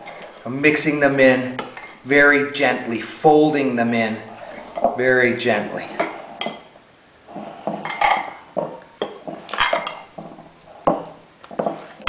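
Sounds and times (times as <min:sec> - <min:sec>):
spoon scraping a mixing bowl: 0:04.0 - 0:05.0, 0:05.8 - 0:06.7, 0:07.3 - 0:12.0.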